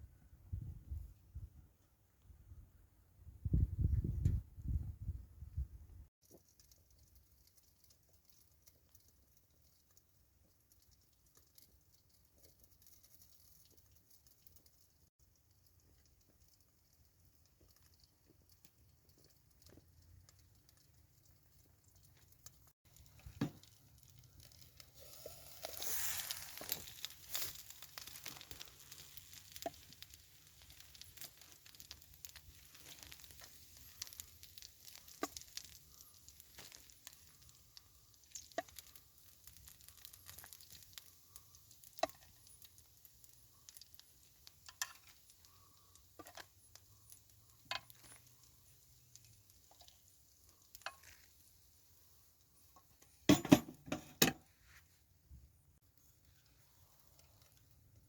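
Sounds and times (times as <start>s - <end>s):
meat sizzling in a pan: 22.4s - 52.8s.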